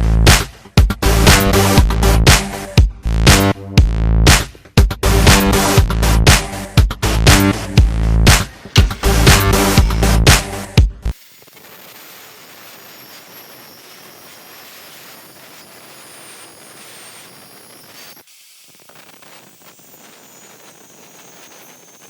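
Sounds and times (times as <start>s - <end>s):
music: 0.0s - 11.2s.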